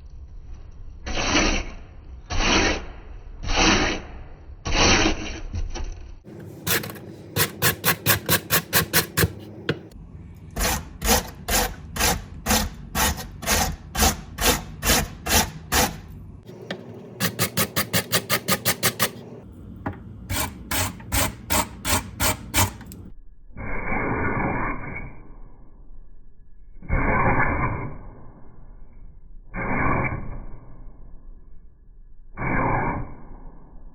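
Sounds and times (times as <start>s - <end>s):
potato grated on metal grater: 2.3s - 2.8s, 6.3s - 9.6s, 10.6s - 19.4s, 20.3s - 23.0s.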